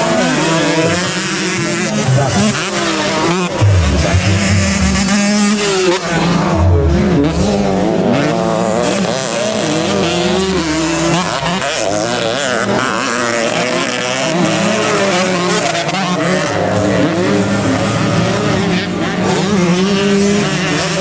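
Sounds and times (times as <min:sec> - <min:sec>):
racing motorcycle engines revving: 0:00.0 - 0:21.0.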